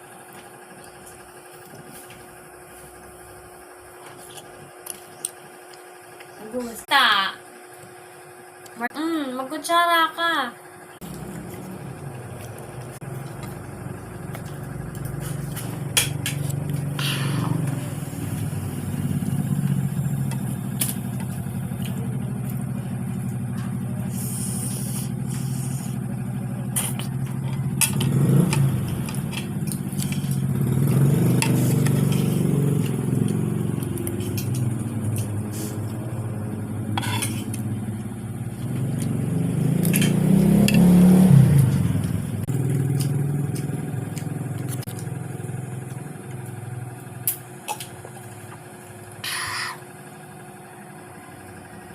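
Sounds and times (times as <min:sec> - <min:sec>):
low engine hum: 0:10.7 - 0:49.3.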